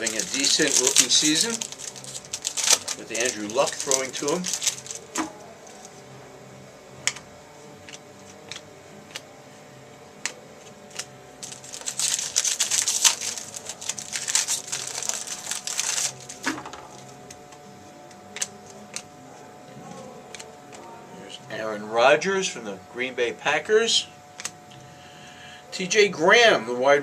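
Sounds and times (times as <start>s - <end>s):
card pack wrapper crinkling: 0.0s - 5.9s, 10.8s - 17.4s, 18.2s - 19.1s
trading cards clicking: 0.0s - 5.9s, 7.9s - 9.3s, 10.2s - 19.1s, 24.4s - 24.6s.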